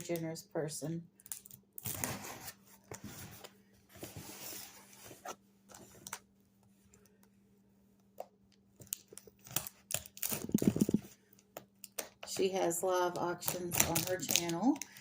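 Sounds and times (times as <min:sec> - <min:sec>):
package rustling and knocking: 0:10.3 - 0:11.1.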